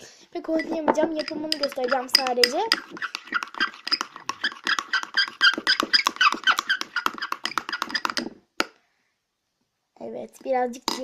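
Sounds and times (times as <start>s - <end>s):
spoon scraping squeaks in bowl: 0.6s - 8.3s.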